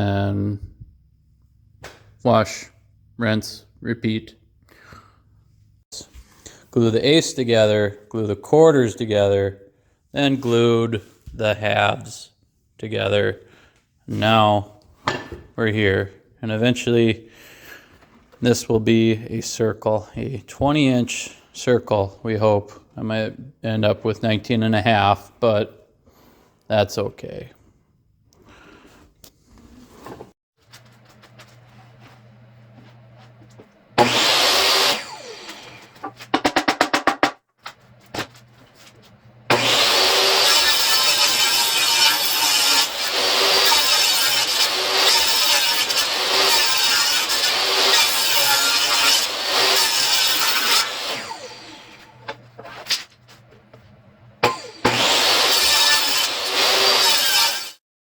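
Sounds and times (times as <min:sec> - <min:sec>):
power tool cutting wood: 0:34.0 - 0:36.2, 0:39.5 - 0:52.6, 0:54.4 - 0:57.8.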